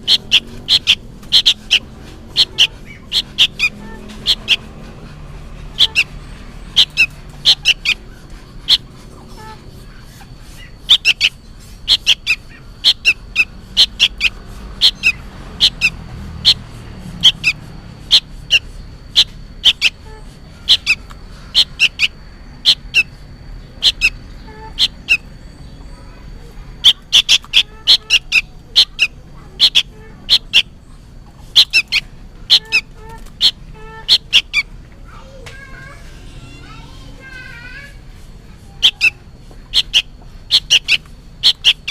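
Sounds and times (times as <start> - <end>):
bulbul chirping: 0.0 - 34.7, 38.7 - 41.9.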